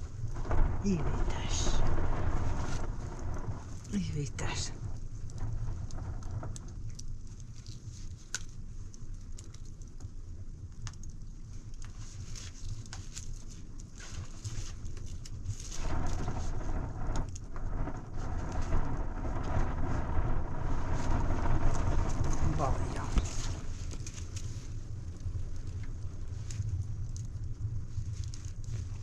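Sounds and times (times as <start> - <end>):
low rumble: 0.0 - 7.9, 14.1 - 29.0
rain falling steadily: 0.0 - 29.0
raindrops pattering close by: 0.0 - 29.0.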